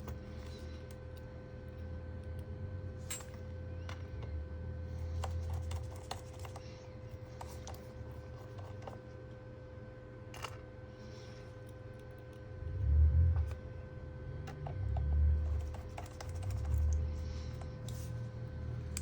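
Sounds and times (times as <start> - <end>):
low electrical hum: 0.0 - 19.0
small laptop parts clicking: 5.1 - 6.7, 14.4 - 18.1.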